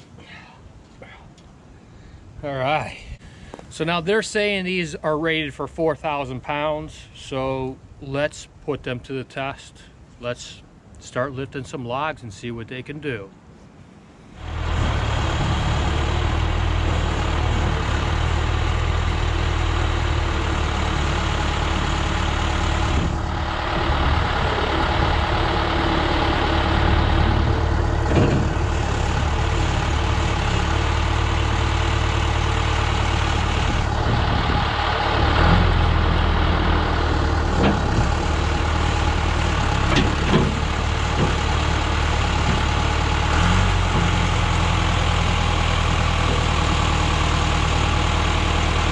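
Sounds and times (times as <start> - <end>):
diesel engine running: 14.4 - 48.9.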